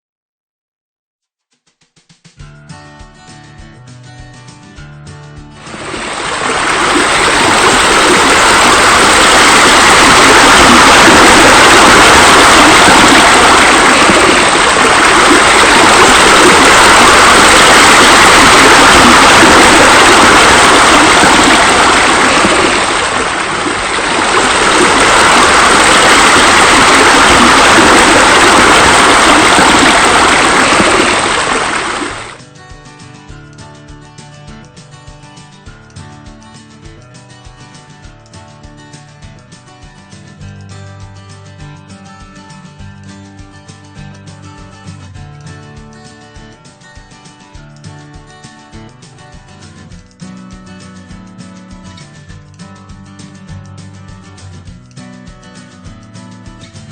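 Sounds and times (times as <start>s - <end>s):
water pouring from waterfall: 5.6s - 32.4s.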